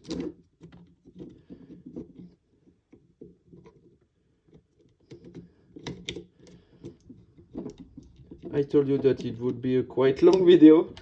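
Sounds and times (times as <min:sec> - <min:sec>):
plastic parts clicking and rubbing: 0:00.0 - 0:11.0.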